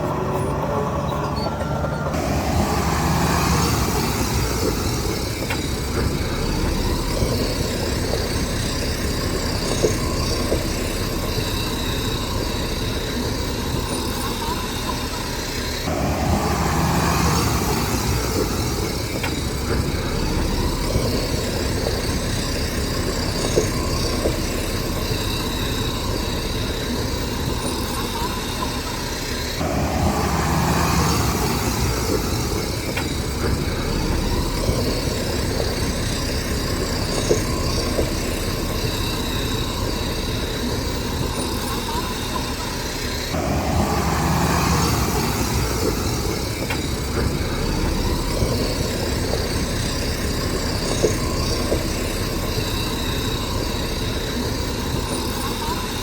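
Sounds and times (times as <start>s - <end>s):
diesel earthmoving machinery running: 0.0s - 56.0s.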